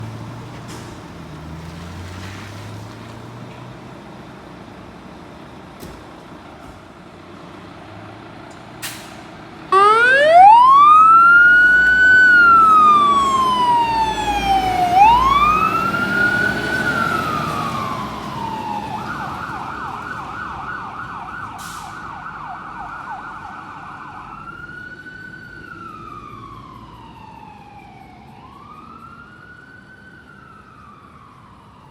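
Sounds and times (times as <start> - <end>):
engine rumble: 0.0 - 31.7
fire truck siren wailing and yelping: 9.6 - 31.9.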